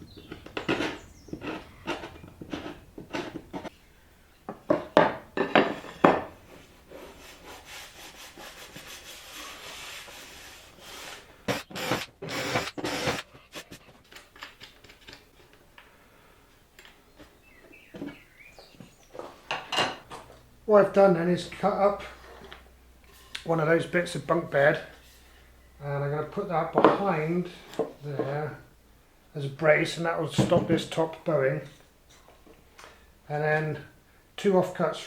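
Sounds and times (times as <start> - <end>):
hand tool scraping wood: 0.0 - 3.7, 4.7 - 15.3, 21.5 - 25.5
rubbing hiss: 6.5 - 13.7.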